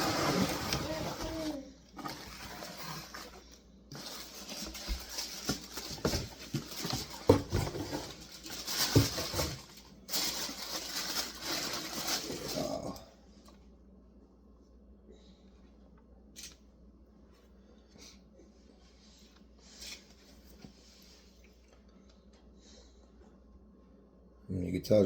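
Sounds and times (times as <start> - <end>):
packaging rustling: 0.0 - 13.0.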